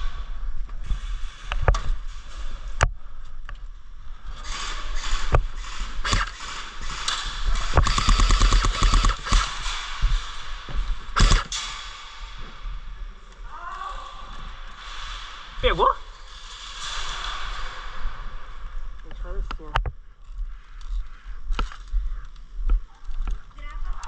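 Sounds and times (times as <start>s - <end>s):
airsoft gun shots: 6.0s - 9.9s, 11.2s - 12.0s.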